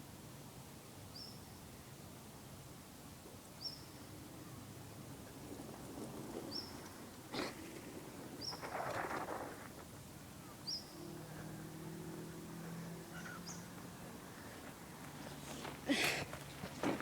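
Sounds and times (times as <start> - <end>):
bird chirping: 13.1 - 13.8.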